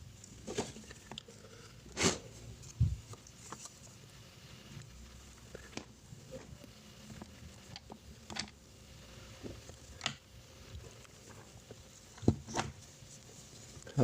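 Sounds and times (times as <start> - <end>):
small parts clicking and tapping: 7.2 - 8.6.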